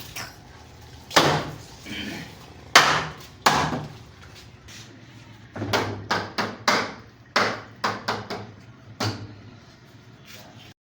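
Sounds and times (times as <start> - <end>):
hammer striking wood: 2.8 - 3.8, 5.7 - 9.2.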